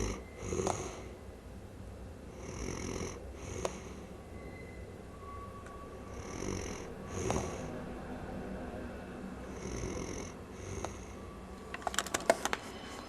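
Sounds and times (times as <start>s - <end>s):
man snoring: 0.0s - 1.1s, 2.4s - 4.0s, 6.1s - 7.7s, 9.5s - 11.2s.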